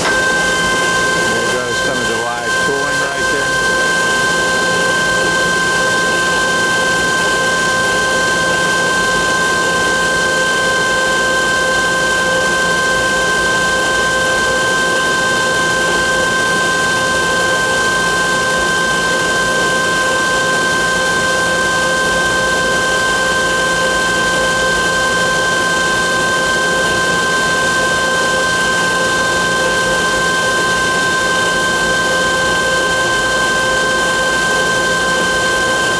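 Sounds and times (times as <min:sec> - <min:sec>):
lathe mechanical hiss: 0:00.0 - 0:03.8
high constant whines: 0:00.0 - 0:04.2
machine hum with whining tones: 0:00.0 - 0:35.9.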